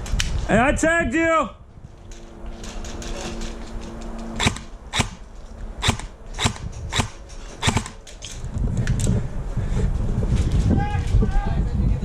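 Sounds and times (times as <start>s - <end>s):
airsoft gun shots: 4.4s - 5.2s, 5.8s - 8.0s.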